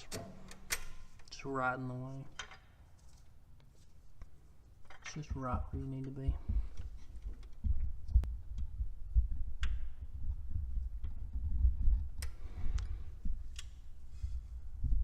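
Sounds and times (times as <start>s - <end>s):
low thumping handling noise: 5.2s - 12.2s.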